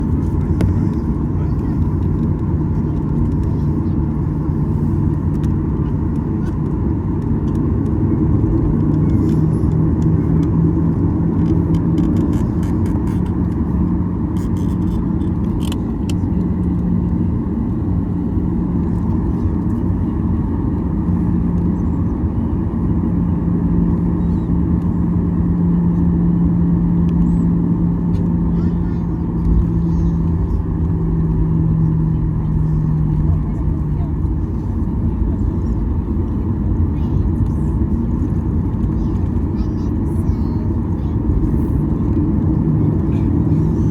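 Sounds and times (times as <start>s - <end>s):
airplane cabin engine rumble: 0.0s - 43.9s
steady hum: 13.2s - 43.9s.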